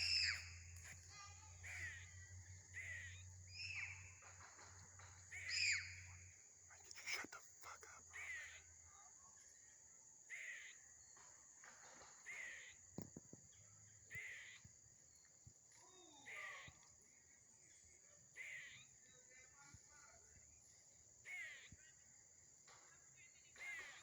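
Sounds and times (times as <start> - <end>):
squirrel calling: 0.0 - 4.2, 5.2 - 6.2, 6.9 - 8.7, 10.3 - 11.0, 12.2 - 13.2, 14.1 - 14.8, 15.9 - 17.0, 17.8 - 19.0, 21.2 - 22.0, 23.6 - 24.0.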